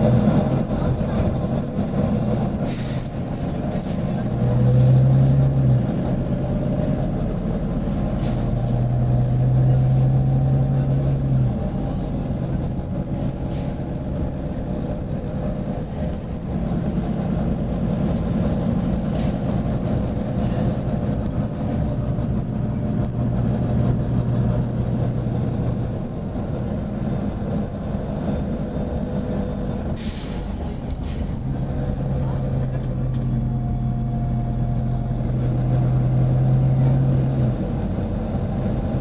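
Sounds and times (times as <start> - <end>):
bus diesel engine humming: 0.0 - 39.0
air brake hisses: 2.6 - 4.1, 7.7 - 8.6, 13.1 - 13.9, 18.5 - 19.5, 30.0 - 31.5.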